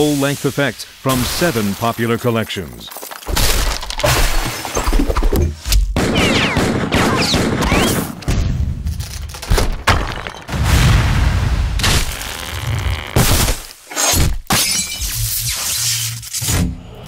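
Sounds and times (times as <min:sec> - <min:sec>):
shattering debris: 0:02.8 - 0:05.4, 0:08.8 - 0:11.2
crashes and booms: 0:09.6 - 0:12.1.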